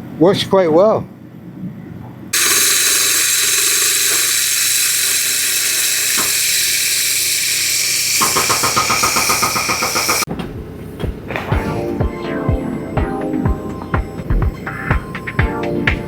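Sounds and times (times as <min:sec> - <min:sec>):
heater rushing hiss: 0:02.4 - 0:10.3.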